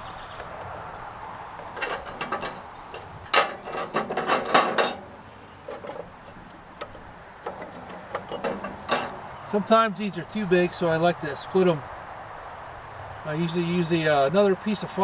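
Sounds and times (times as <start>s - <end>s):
wooden sticks clacking: 0.4s - 9.4s.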